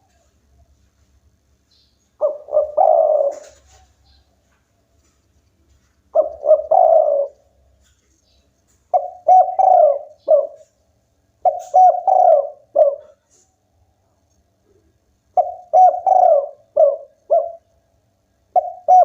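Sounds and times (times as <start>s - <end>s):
dove cooing: 2.2s - 4.3s, 5.7s - 8.0s, 8.9s - 10.8s, 11.4s - 13.4s, 14.6s - 17.7s, 18.5s - 19.0s.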